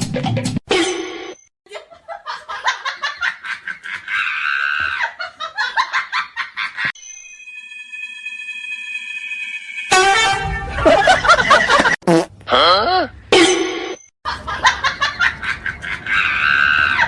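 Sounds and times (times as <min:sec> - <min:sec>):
person laughing: 0:10.8 - 0:13.1.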